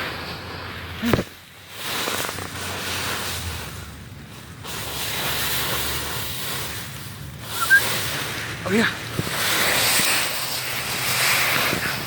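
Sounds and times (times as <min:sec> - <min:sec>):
dry leaves rustling and crunching: 0:07.9 - 0:12.0.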